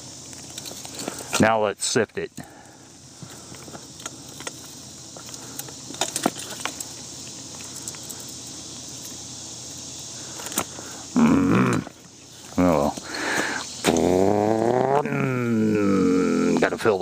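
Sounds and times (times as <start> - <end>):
small clicks and rattles: 0.2 - 1.4, 3.3 - 10.7.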